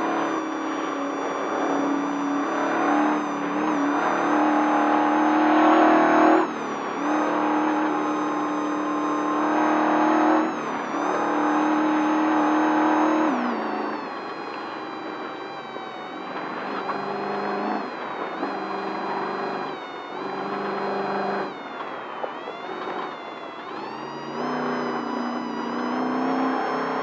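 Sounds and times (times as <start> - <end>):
road and wind noise: 0.0 - 27.0
truck engine at high revs: 0.0 - 27.0.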